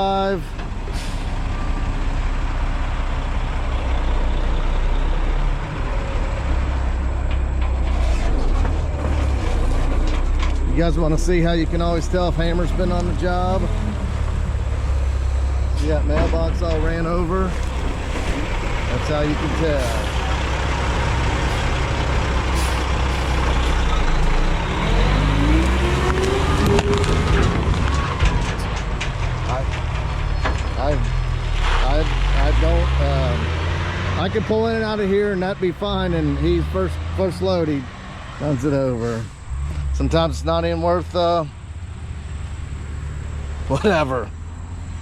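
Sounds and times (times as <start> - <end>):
heavy diesel engine rumbling: 0.0 - 45.0.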